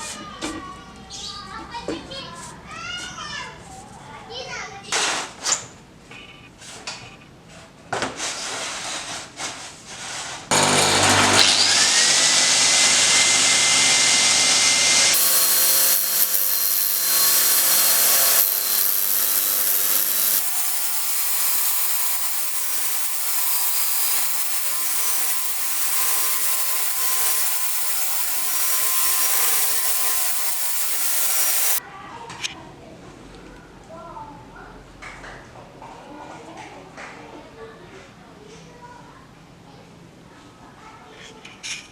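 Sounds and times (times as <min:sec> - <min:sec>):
power tool whining: 0:10.5 - 0:31.8.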